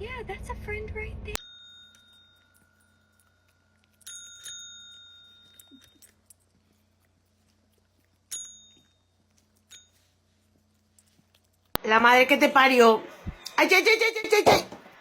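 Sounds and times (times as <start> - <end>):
small metal bell ringing: 1.4 - 6.1, 8.3 - 10.1.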